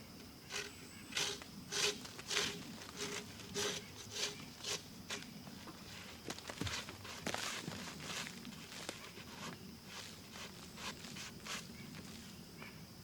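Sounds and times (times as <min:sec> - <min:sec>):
brush scrubbing bark: 0:00.5 - 0:04.9, 0:06.6 - 0:12.3.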